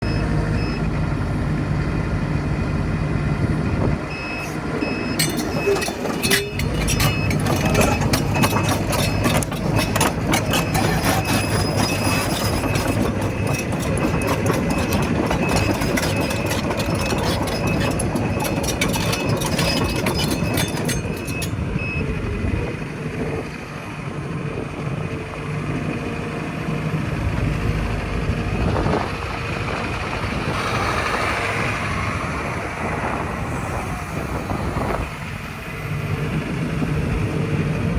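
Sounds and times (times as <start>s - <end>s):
excavator diesel engine running: 0.0s - 37.9s
high squeal: 4.4s - 21.6s
metallic clanking: 4.4s - 21.6s.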